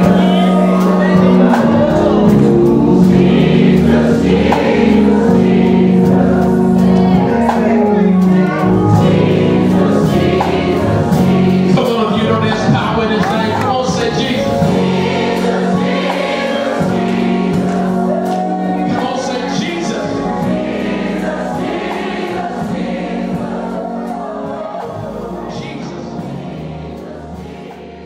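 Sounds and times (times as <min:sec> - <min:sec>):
gospel choir singing: 0:00.0 - 0:28.0.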